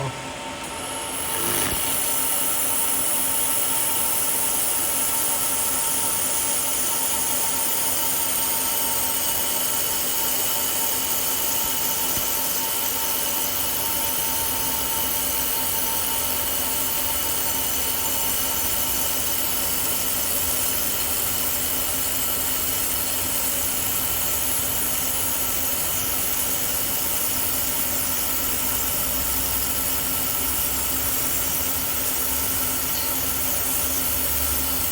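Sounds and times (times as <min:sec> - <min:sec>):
steady machine tones: 0:00.0 - 0:03.4, 0:11.0 - 0:34.9
welding machine whir and hiss: 0:00.0 - 0:34.9.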